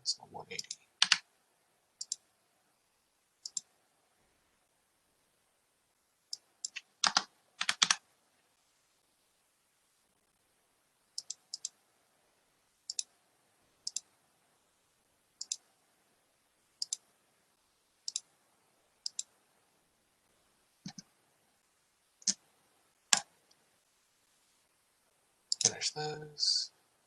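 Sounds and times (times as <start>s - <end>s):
computer mouse clicks: 0.5s - 1.2s, 2.0s - 2.2s, 3.4s - 3.7s, 6.3s - 8.0s, 11.2s - 11.8s, 12.9s - 13.1s, 13.8s - 14.1s, 15.4s - 15.7s, 16.8s - 17.1s, 18.0s - 18.3s, 19.0s - 19.3s, 20.8s - 21.1s, 22.2s - 22.4s, 25.5s - 25.8s.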